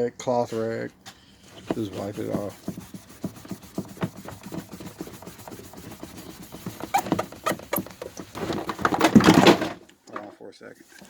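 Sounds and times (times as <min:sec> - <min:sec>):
cloth rag squeaking on lens: 0:01.6 - 0:08.4.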